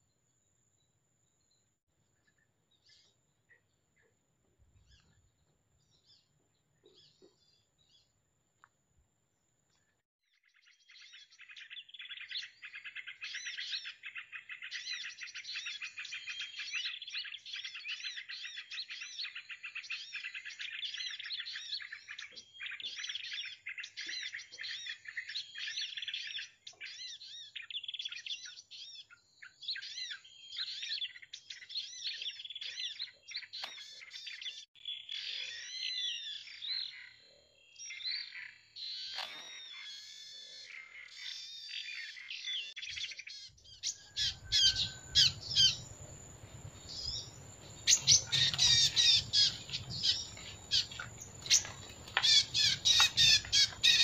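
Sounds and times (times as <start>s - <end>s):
small birds chirping: 0.8s - 8.8s, 9.7s - 54.0s
swooping bird calls: 37.9s - 54.0s.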